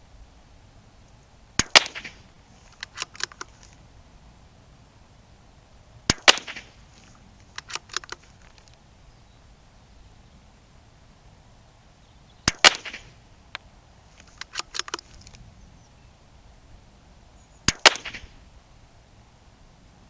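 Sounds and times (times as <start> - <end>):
rifle bolt clicks: 1.6 - 3.8, 6.1 - 8.8, 12.5 - 15.4, 17.7 - 18.3
rifle shots: 1.6 - 3.8, 6.1 - 8.6, 12.4 - 13.2, 17.7 - 18.4.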